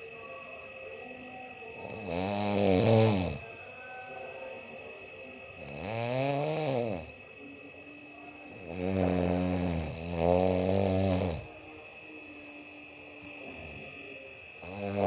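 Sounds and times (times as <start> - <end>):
man snoring loudly: 1.8 - 3.4, 5.6 - 7.2, 8.4 - 11.5, 14.6 - 15.0.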